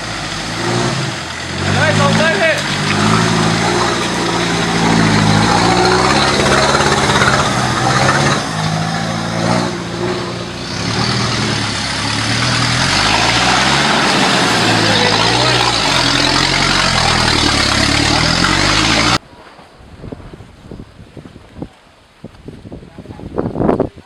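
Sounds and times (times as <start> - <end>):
off-road vehicle engine revving: 0.0 - 19.2.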